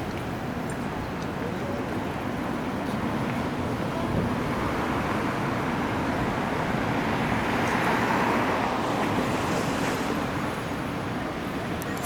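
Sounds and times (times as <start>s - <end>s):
city road traffic: 0.0s - 12.0s
car passing: 3.4s - 11.4s.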